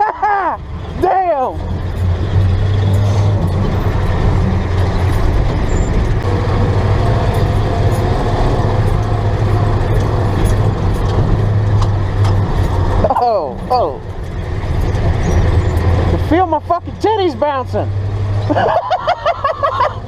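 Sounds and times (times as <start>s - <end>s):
vehicle engine running: 0.0s - 20.0s
body rattles and knocks: 0.8s - 17.4s.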